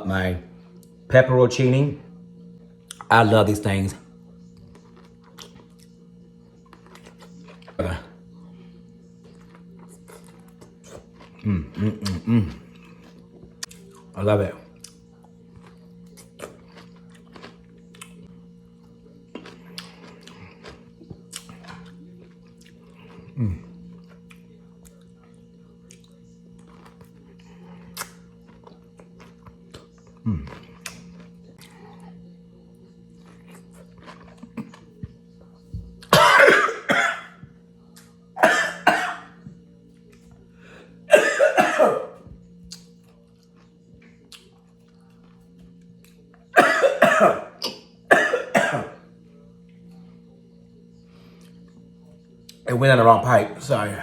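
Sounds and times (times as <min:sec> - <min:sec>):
wet chewing crunches: 0:02.8 - 0:03.2, 0:04.5 - 0:32.2, 0:32.8 - 0:36.2, 0:42.2 - 0:46.5
person coughing hard: 0:11.4 - 0:12.7, 0:36.1 - 0:37.4, 0:38.4 - 0:39.3, 0:41.1 - 0:42.2, 0:46.6 - 0:49.0.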